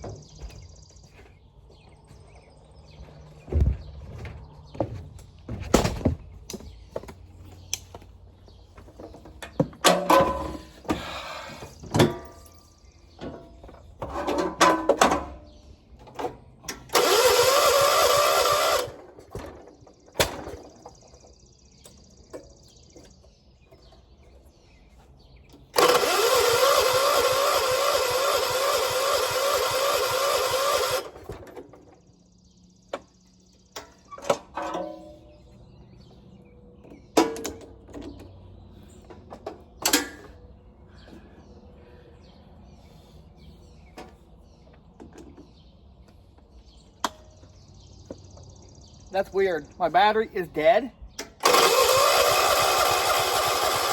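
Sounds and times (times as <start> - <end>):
starter motor cranking engine: 16.7 - 19.6, 25.6 - 31.4, 51.2 - 53.9.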